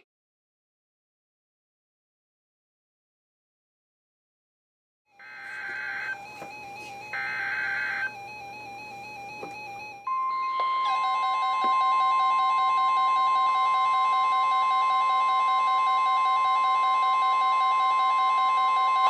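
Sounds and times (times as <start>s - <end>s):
long steady warning alarm beep: 5.2s - 19.0s.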